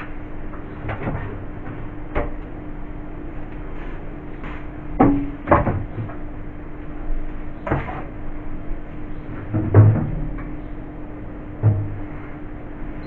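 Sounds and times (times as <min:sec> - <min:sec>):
steady low hum: 0:00.0 - 0:13.0
containers knocking on shelf: 0:05.0 - 0:06.2.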